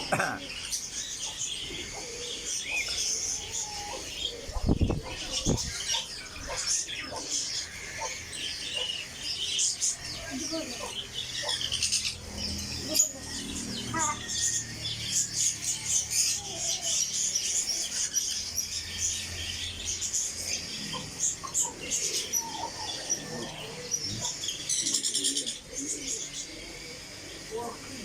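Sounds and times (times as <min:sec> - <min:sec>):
parrot chicks chirping: 0:00.0 - 0:27.8.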